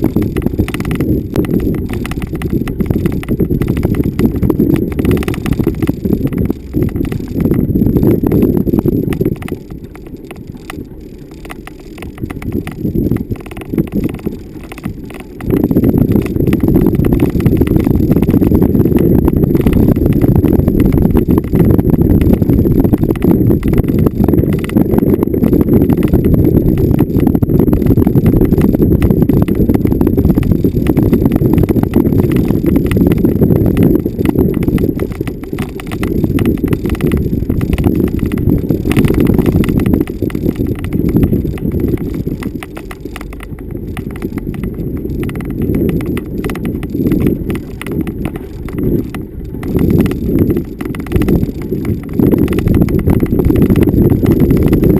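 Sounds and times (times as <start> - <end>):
rapid rattles and knocks: 0.0 - 54.9
vehicle driving over bumpy ground: 0.0 - 54.9.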